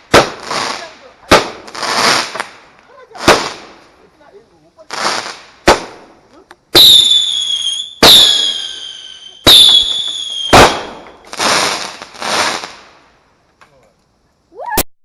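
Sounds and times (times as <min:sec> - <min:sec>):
firework hissing burst: 0:00.0 - 0:04.0, 0:04.8 - 0:13.2
firework bangs: 0:00.0 - 0:04.1, 0:04.8 - 0:13.2
shrill firework whistles: 0:06.8 - 0:12.8.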